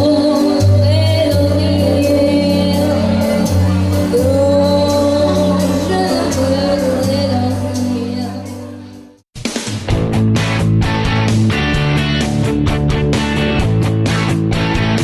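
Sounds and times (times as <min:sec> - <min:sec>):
person singing long notes: 0:00.0 - 0:09.0
bass and drum backing track: 0:00.0 - 0:15.0.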